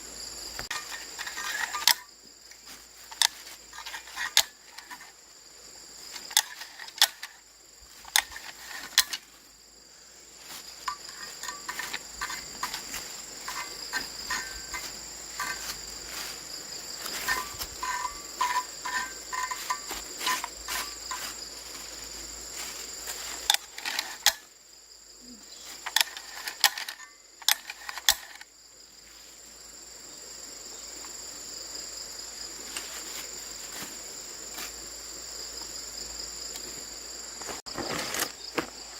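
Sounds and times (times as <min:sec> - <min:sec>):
crickets chirring: 0:00.0 - 0:38.9
metallic clicks and clinks of tools: 0:00.6 - 0:02.1, 0:10.8 - 0:15.8, 0:17.1 - 0:21.4, 0:25.8 - 0:28.5.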